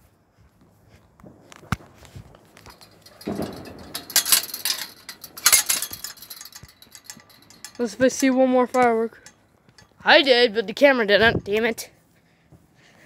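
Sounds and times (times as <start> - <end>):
clinking and rattling: 2.4 - 11.7.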